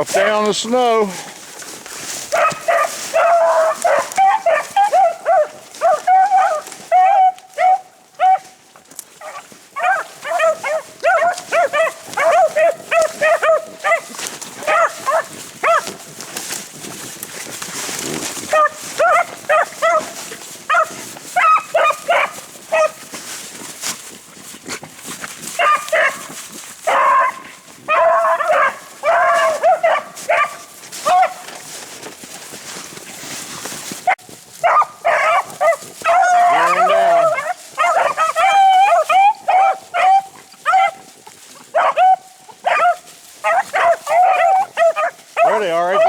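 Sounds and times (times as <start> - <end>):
dogs baying and yelping: 2.1 - 16.0, 17.9 - 23.1, 25.4 - 31.8, 33.8 - 46.0.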